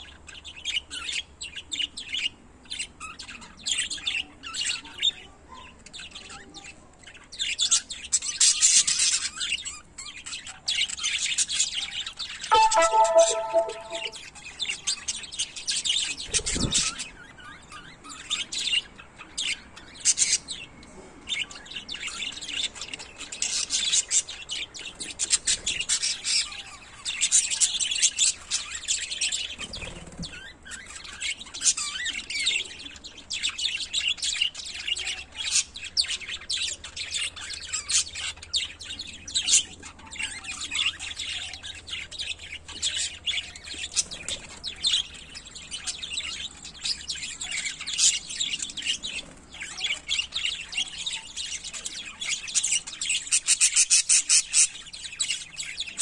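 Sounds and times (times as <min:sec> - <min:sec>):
budgerigars chirping and warbling: 0:28.9 - 0:56.0.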